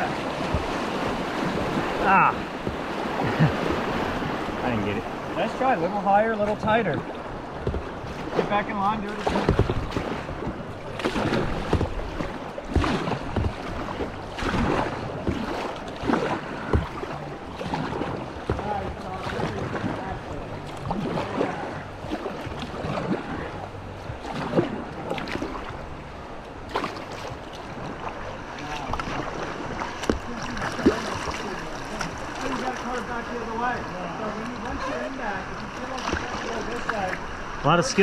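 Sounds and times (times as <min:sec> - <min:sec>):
wind buffeting microphone: 0:00.0 - 0:05.5
paddle splashing: 0:00.0 - 0:38.0
whitewater washing around kayak: 0:00.0 - 0:38.0.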